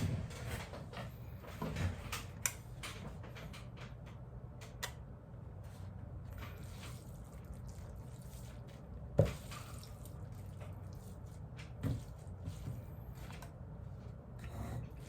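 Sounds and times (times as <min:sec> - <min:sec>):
wet eating sounds: 0:06.4 - 0:13.6.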